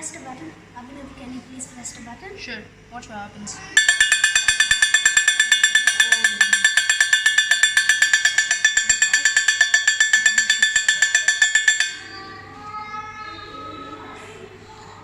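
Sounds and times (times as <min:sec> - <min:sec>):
doorbell rapid metallic ringing: 0:03.8 - 0:12.3.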